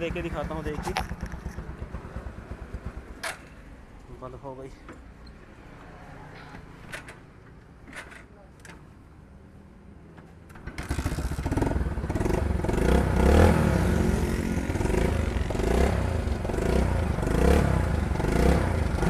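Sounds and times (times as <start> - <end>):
motorcycle engine revving: 0.0 - 3.3, 10.8 - 19.0.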